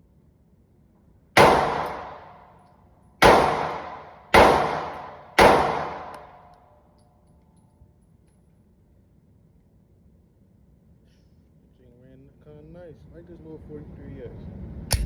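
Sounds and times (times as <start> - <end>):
pistol shots with ringing echo: 1.4 - 2.5, 3.2 - 6.6.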